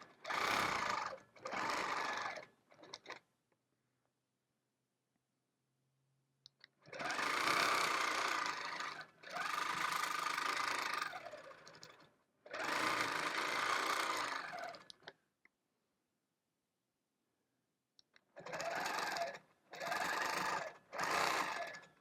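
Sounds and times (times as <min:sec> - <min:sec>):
quilting machine stitching: 0:00.0 - 0:03.2, 0:06.9 - 0:15.0, 0:18.4 - 0:22.0.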